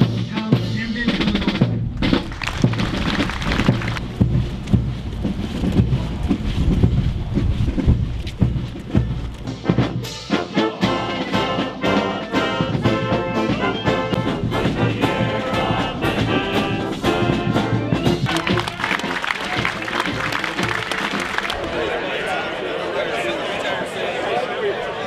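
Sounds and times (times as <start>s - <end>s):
brass band playing: 0.0s - 5.0s, 8.9s - 22.4s
steady drum beat: 0.0s - 21.6s
trumpets and trombones: 8.9s - 22.9s.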